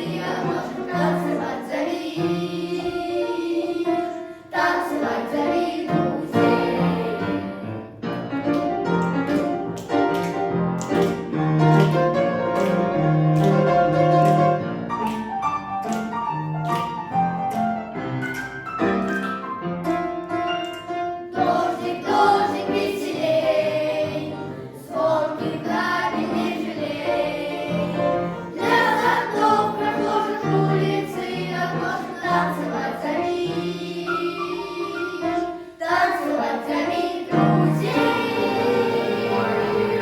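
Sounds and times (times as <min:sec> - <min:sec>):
boys choir singing: 0:00.0 - 0:07.9, 0:21.4 - 0:40.0
musical accompaniment: 0:00.0 - 0:40.0.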